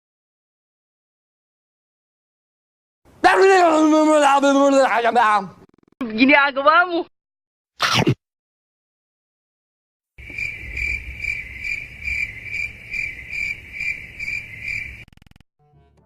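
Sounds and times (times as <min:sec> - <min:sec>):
crickets chirping: 0:10.2 - 0:15.3.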